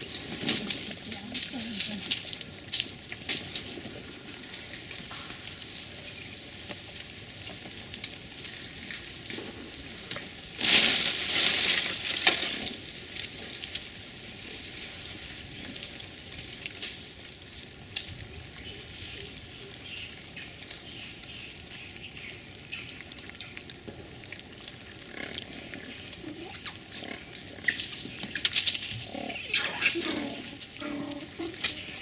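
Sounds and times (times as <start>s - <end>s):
low cattle sounds: 24.9s - 32.0s.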